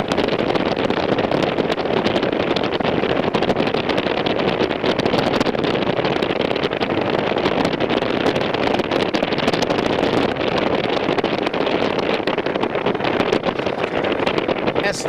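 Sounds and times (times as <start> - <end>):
aircraft cabin noise: 0.0 - 15.0.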